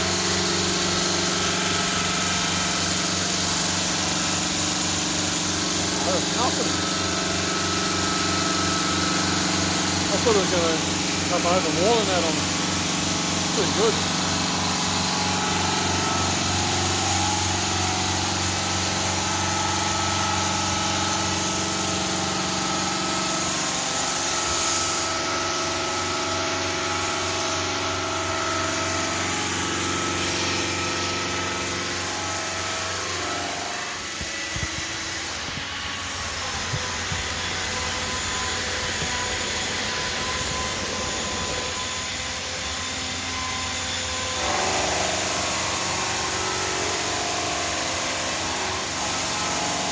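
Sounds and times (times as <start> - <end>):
stone saw cutting granite: 0.0 - 49.9.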